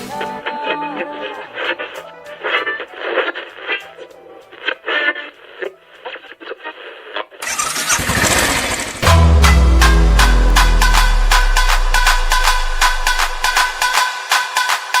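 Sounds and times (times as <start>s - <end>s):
tinny music through radio: 0.0s - 7.4s
noise sweep: 9.0s - 14.0s
electronic dance music: 9.0s - 15.0s.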